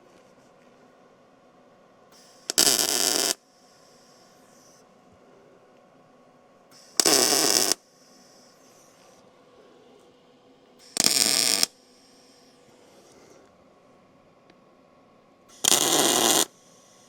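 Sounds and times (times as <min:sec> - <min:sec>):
arc welder crackling bursts: 0:02.2 - 0:03.4, 0:06.8 - 0:07.8, 0:10.8 - 0:12.5, 0:15.5 - 0:17.0.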